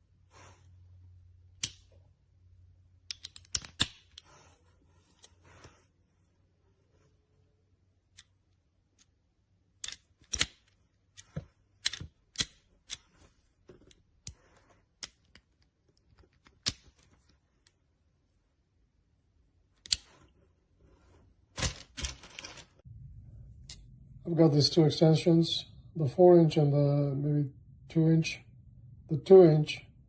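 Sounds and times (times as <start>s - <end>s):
metal sockets clicking and clinking: 3.0s - 4.2s, 9.7s - 11.2s, 11.8s - 13.0s, 15.0s - 17.8s.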